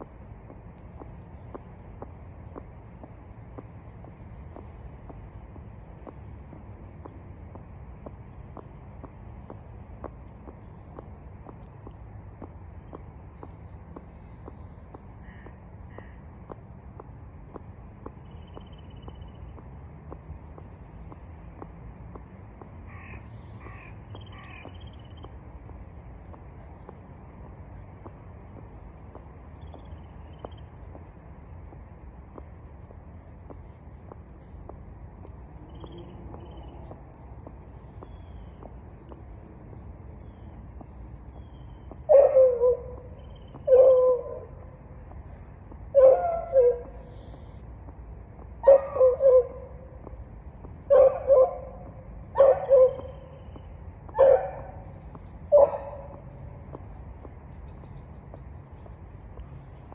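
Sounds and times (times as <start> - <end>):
dog barking: 42.1 - 43.1, 43.7 - 44.5, 46.0 - 46.9, 48.6 - 49.6, 50.9 - 51.7, 52.4 - 53.2, 54.2 - 54.8, 55.5 - 56.2.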